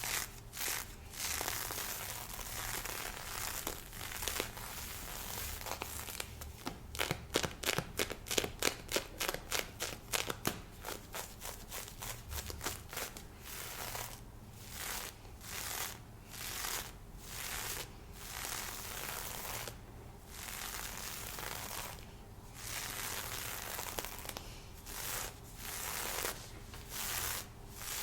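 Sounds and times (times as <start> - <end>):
scratching on fishnet stockings: 0.0 - 28.0.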